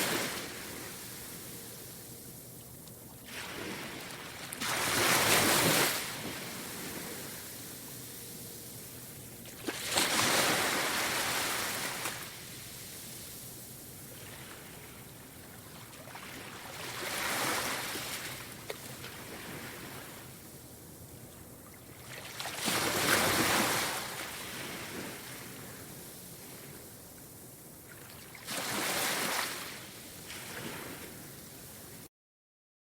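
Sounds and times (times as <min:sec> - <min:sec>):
waves crashing on shore: 0:00.0 - 0:01.6, 0:03.3 - 0:07.6, 0:09.7 - 0:13.0, 0:22.2 - 0:25.6, 0:28.4 - 0:31.2
surf hiss: 0:00.0 - 0:32.1.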